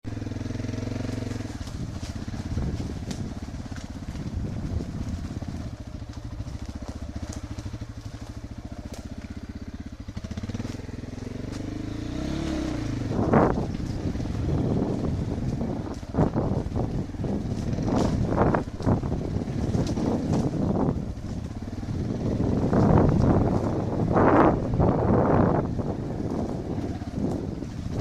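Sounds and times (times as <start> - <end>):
motorcycle engine revving: 0.0 - 28.0
sharp clicks and cracks: 6.0 - 9.4.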